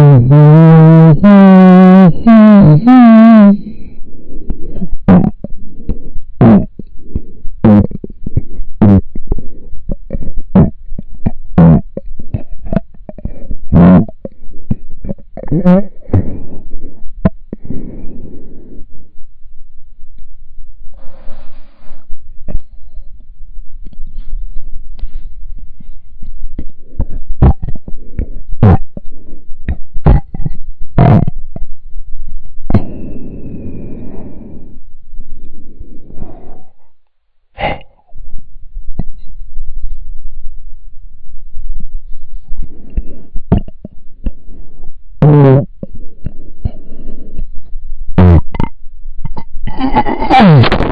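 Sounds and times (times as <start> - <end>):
loud burps: 0.0 - 3.6, 5.1 - 5.5, 6.4 - 6.7, 10.5 - 10.8, 11.6 - 14.2, 15.0 - 15.9, 30.0 - 31.5, 45.2 - 45.7, 48.2 - 50.9
soft rumbling noise: 1.9 - 50.0.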